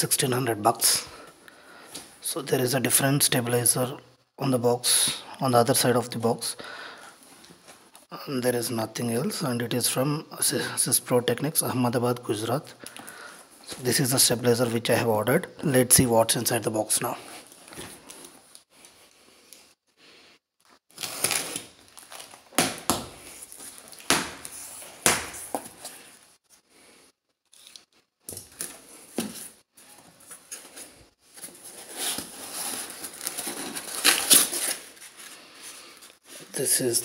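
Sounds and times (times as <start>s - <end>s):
packaging rustling and crinkling: 20.7s - 26.6s, 27.4s - 36.5s
cardboard tearing: 20.9s - 25.9s, 31.4s - 35.2s.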